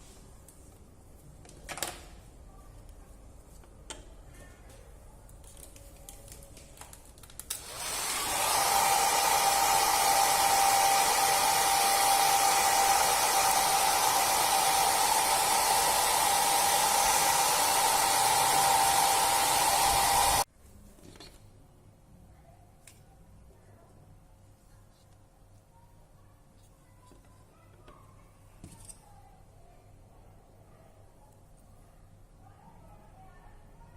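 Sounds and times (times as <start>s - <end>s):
hair dryer blowing: 7.5s - 20.5s.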